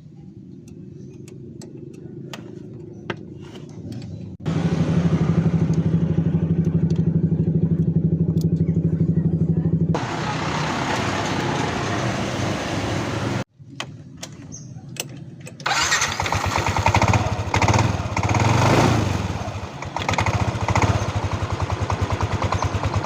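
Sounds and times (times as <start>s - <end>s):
motorcycle engine running and revving: 0.4s - 23.0s.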